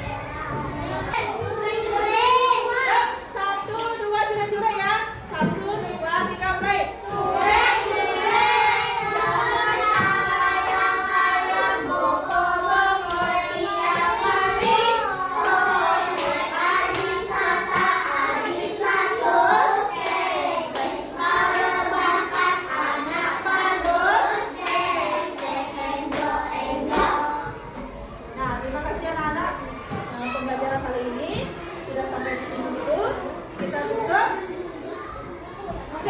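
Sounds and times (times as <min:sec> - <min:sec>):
children singing: 0:00.0 - 0:03.4, 0:07.0 - 0:28.0
children clapping: 0:07.2 - 0:27.4.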